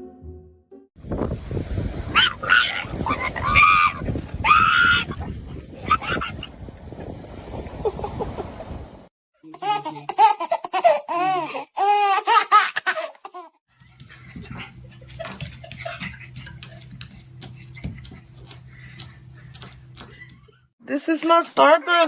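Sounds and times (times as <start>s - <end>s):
steady low hum: 13.7s - 20.7s.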